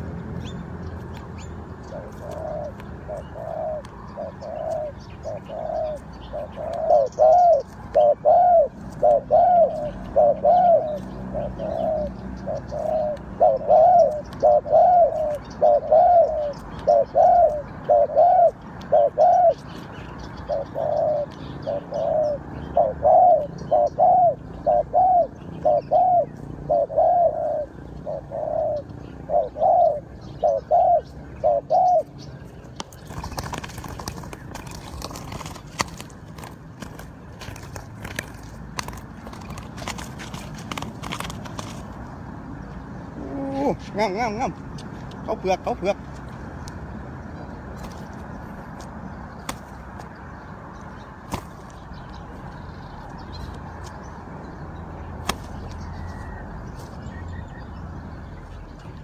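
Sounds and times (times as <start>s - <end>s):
dove cooing: 1.8s - 41.9s, 43.1s - 44.6s.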